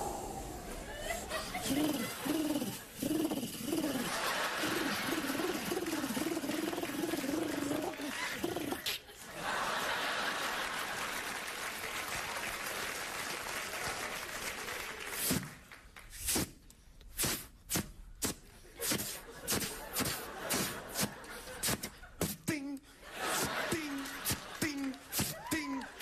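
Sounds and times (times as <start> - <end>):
audience laughing: 0.0 - 11.9, 18.6 - 26.0
audience applauding: 4.0 - 16.1, 23.2 - 26.0.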